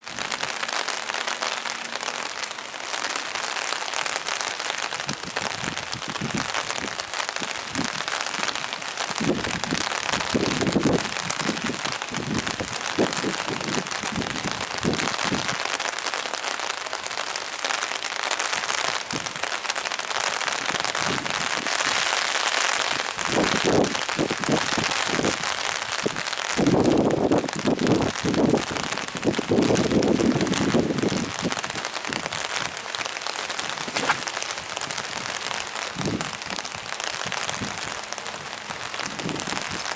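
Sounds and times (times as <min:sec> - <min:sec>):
steady rain hiss: 0:00.0 - 0:39.9
wind buffeting microphone: 0:23.2 - 0:39.9.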